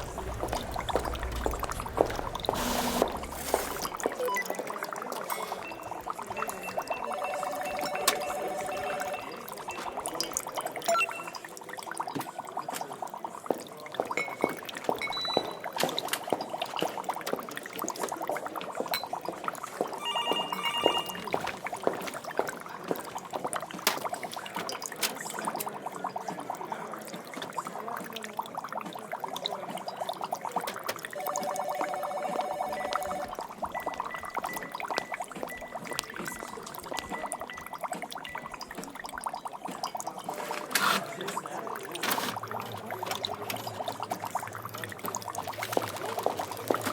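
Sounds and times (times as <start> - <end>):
two-tone electronic tone: 0.0 - 10.0, 10.9 - 11.4, 20.0 - 21.4, 31.2 - 37.6
electronic equipment beeps: 0.0 - 11.5, 15.0 - 15.7, 20.0 - 21.5, 31.2 - 38.8
liquid bubbling and gurgling: 0.0 - 46.9.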